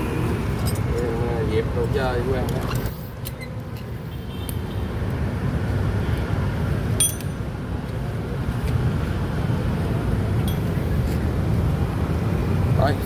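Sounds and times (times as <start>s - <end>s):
road traffic rumble: 0.0s - 13.0s
sharp metallic clink: 7.0s - 7.4s.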